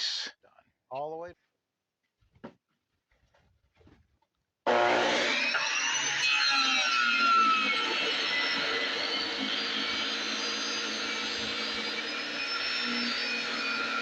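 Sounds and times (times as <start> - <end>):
table saw cutting wood: 4.7 - 14.0.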